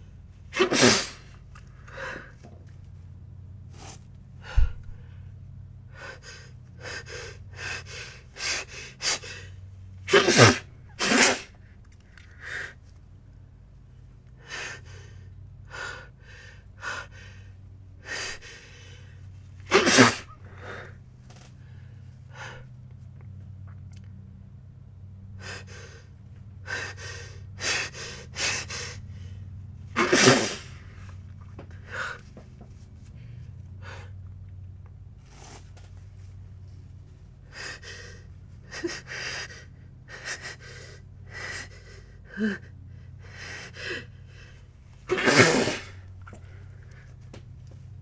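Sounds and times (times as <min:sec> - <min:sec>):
person sneezing: 0:00.5 - 0:02.4, 0:10.1 - 0:11.6, 0:19.7 - 0:20.8, 0:30.0 - 0:30.8, 0:45.1 - 0:46.6
gasping breaths: 0:00.6 - 0:02.6, 0:05.9 - 0:13.0, 0:25.4 - 0:34.2, 0:37.4 - 0:47.2.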